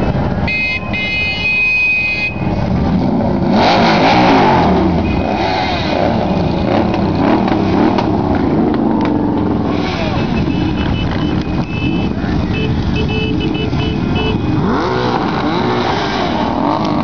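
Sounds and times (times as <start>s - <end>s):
car horn: 0.0s - 2.6s, 4.9s - 5.6s, 9.7s - 15.0s
sports car engine revving: 2.5s - 17.0s.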